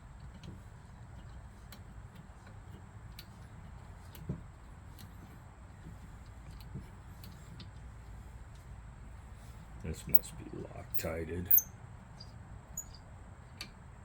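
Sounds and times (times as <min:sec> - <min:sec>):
low background hum: 0:00.0 - 0:14.0.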